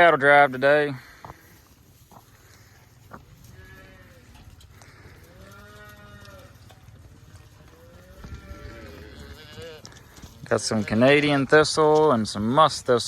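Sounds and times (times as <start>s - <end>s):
cattle mooing: 3.5s - 6.7s, 7.4s - 10.0s.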